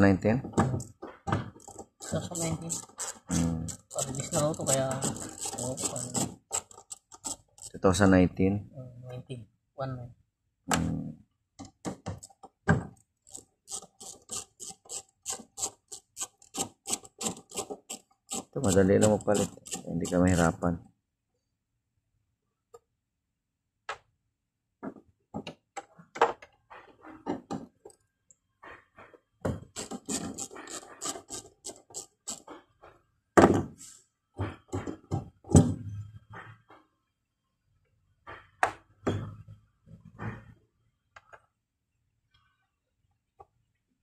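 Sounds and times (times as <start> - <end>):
clicks and knocks of hand work: 11.6 - 20.5, 24.8 - 33.7, 34.4 - 36.9, 38.2 - 41.6.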